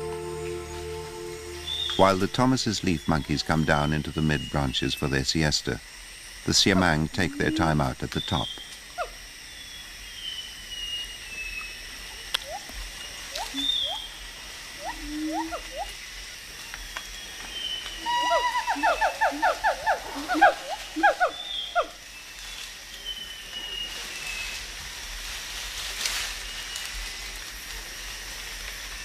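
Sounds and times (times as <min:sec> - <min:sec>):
gibbon rising whoops: 0:14.8 - 0:15.9, 0:18.0 - 0:21.9.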